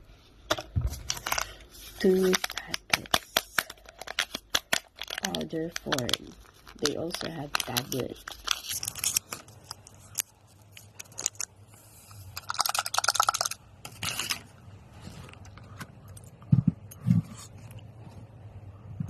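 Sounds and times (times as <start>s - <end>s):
packets crinkling: 0.5s - 11.6s.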